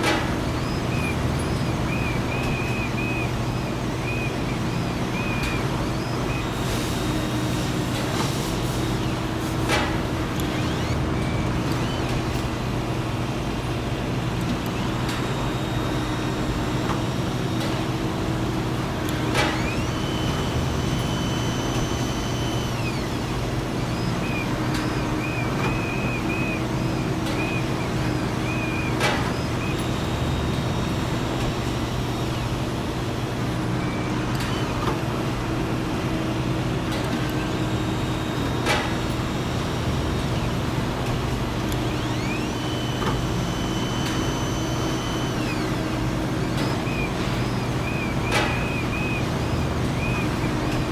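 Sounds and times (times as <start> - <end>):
high machine whine: 0.0 - 35.4, 36.9 - 50.9
factory machinery humming: 0.0 - 50.9
warbling high chirp: 0.3 - 7.4, 19.6 - 31.5, 44.2 - 50.9.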